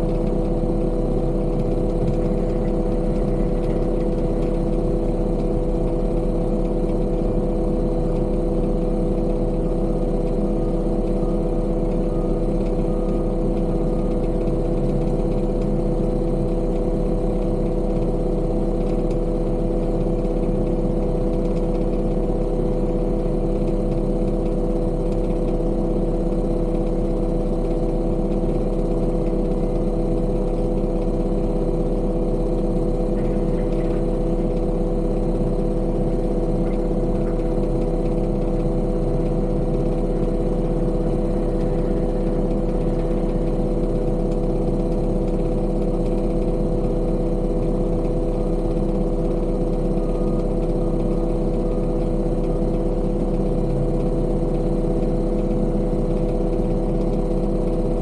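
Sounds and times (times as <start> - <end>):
diesel engine running: 0.0 - 58.0.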